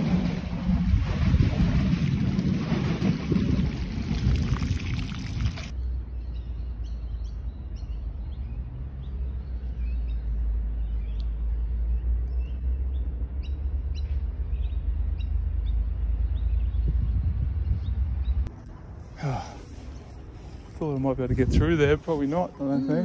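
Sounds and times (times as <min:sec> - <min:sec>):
birds chirping: 0:05.7 - 0:21.2
low rumble: 0:09.5 - 0:22.7.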